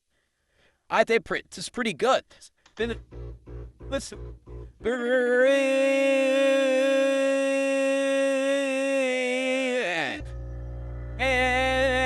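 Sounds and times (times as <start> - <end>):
long held wavering vocal note: 4.8 - 12.0
low pulsing hum: 10.2 - 12.0.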